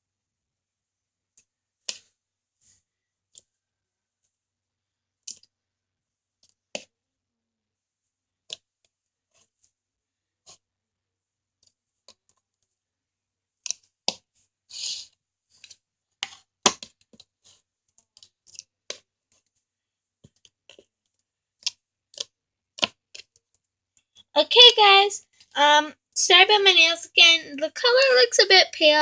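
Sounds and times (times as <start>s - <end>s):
slime squelch: 13.7s - 17.4s.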